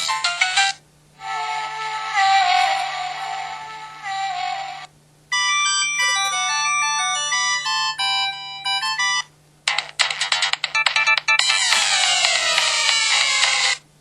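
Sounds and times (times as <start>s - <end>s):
phone ringtone melodies: 5.3s - 11.8s.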